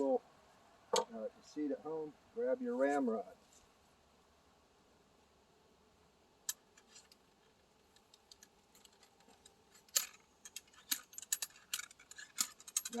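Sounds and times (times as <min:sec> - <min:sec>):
ramrod clicking against barrel: 0:08.0 - 0:13.0.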